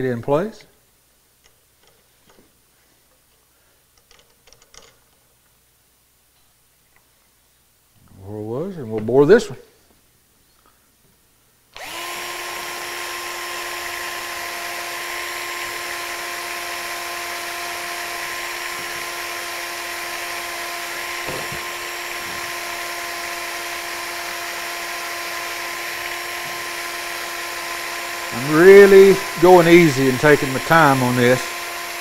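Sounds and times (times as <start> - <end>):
electric drill boring wood: 11.8 - 32.0.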